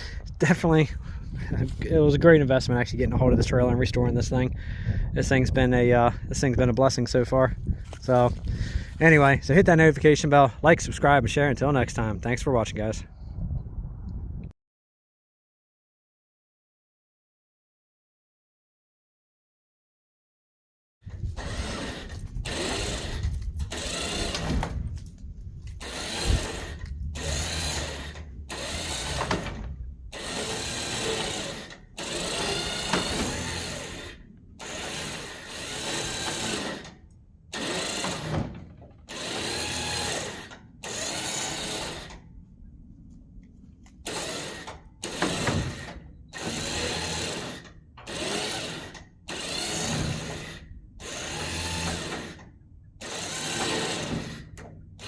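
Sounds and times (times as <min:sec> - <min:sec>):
power tool running in bursts: 0:21.4 - 0:24.5, 0:25.8 - 0:38.4, 0:39.1 - 0:42.2, 0:44.0 - 0:52.4, 0:53.0 - 0:54.5.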